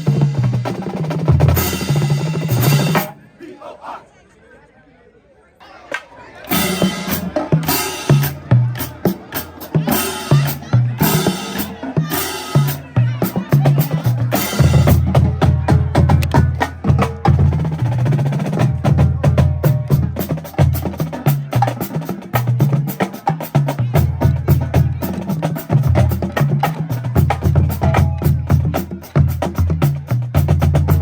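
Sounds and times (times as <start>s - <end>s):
low bass drums: 23.6s - 31.0s.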